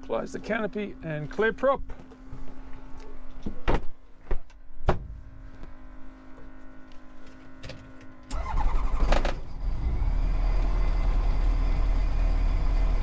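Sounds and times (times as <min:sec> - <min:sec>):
aircraft engine starting and running: 0:06.4 - 0:13.0.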